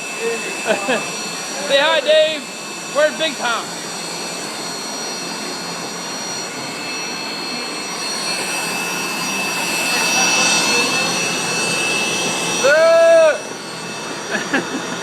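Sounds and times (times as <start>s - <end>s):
high whining tones: 0.0s - 15.0s
rushing machine noise: 0.0s - 15.0s.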